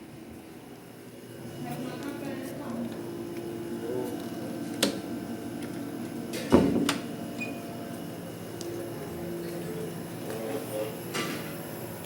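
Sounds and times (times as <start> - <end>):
steady low hum: 0.0 - 12.0
knock with low thud: 6.5 - 6.9.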